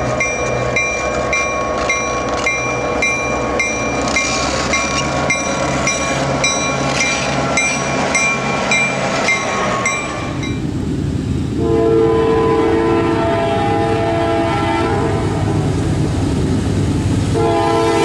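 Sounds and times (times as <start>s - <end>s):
train noise: 0.0s - 18.0s
locomotive air horn: 11.6s - 15.7s, 17.3s - 18.0s.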